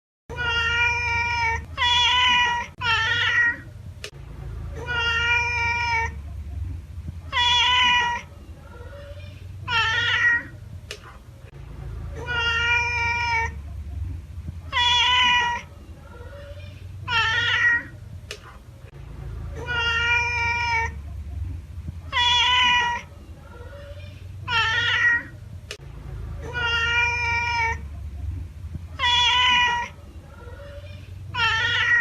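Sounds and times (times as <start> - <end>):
cat meowing: 0.3 - 3.7, 4.8 - 6.2, 7.3 - 10.6, 12.2 - 13.6, 14.7 - 18.0, 19.6 - 21.0, 22.0 - 25.4, 26.4 - 27.8, 29.0 - 32.0
low rumble: 3.6 - 7.8, 10.5 - 15.2, 17.9 - 22.4, 25.3 - 29.4.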